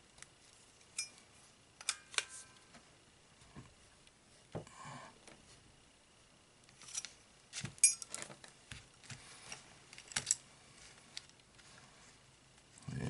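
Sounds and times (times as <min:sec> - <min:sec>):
sharp metallic clink: 0:01.0 - 0:01.2
small metal parts clicking: 0:09.9 - 0:10.4.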